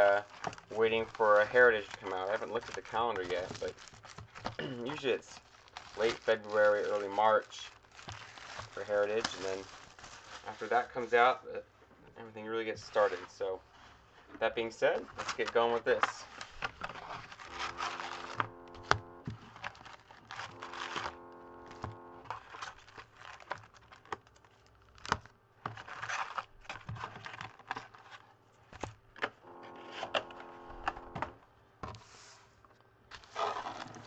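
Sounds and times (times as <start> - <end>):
plastic wrap crinkling and tearing: 0.0 - 11.1, 19.3 - 21.1, 21.7 - 28.9, 33.1 - 34.0
short steady tones: 17.5 - 19.3, 20.4 - 22.3, 29.4 - 31.4.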